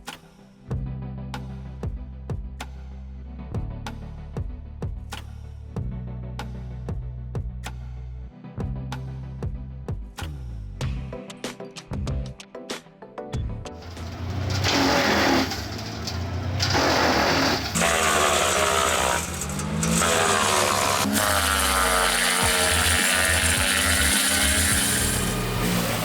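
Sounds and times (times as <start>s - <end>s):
wood chipper engine running: 13.8s - 26.0s.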